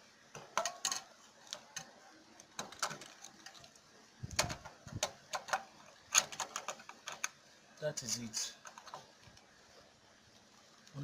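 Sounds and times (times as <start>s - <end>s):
plastic housing clicks and knocks: 4.3s - 7.4s.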